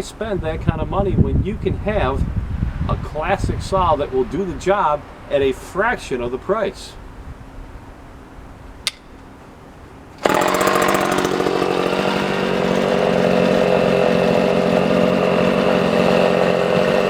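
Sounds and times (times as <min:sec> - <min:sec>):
chainsaw engine running: 0:10.2 - 0:17.0.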